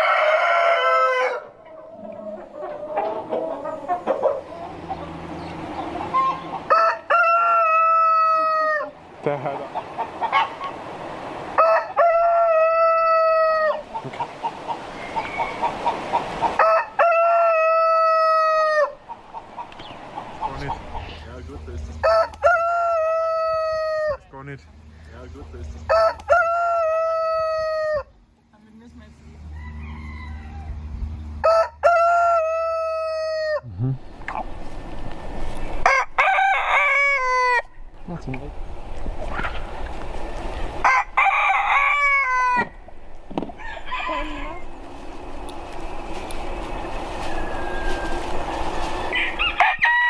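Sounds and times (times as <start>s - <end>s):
rooster crowing: 0.0s - 5.1s, 6.1s - 9.0s, 11.5s - 14.0s, 14.7s - 19.1s, 22.0s - 24.2s, 25.9s - 28.2s, 29.5s - 33.7s, 35.8s - 37.8s, 40.2s - 50.0s
chicken clucking: 1.6s - 10.8s, 13.6s - 16.7s, 18.6s - 21.3s, 39.0s - 49.6s.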